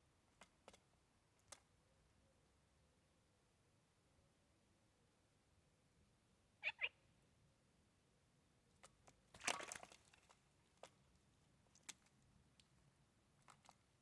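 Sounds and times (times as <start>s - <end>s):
falling bird chirps: 6.6s - 6.9s
bird splashing in water: 8.8s - 12.2s.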